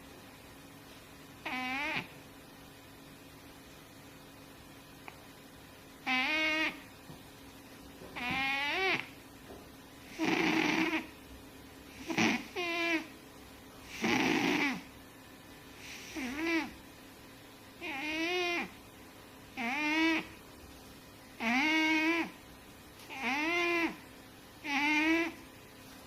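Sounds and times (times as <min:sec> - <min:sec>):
cat snoring: 0:10.1 - 0:11.1, 0:12.0 - 0:13.1, 0:13.8 - 0:14.9, 0:15.8 - 0:16.7.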